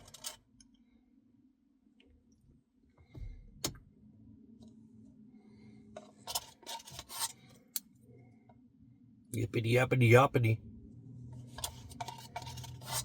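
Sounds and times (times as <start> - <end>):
clicks and scrapes: 6.0 - 7.8, 11.4 - 13.0.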